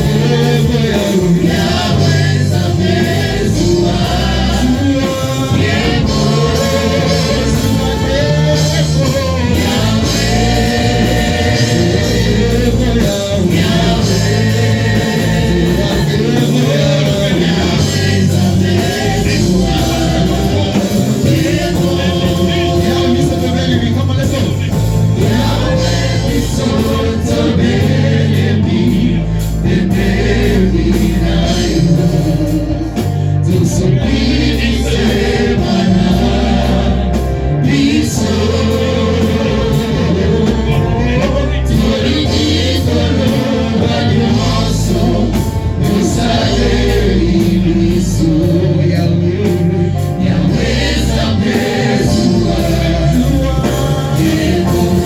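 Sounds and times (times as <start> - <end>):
gospel choir singing: 0.0 - 55.0
heavy bass: 0.0 - 55.0
steady drum beat: 0.0 - 55.0.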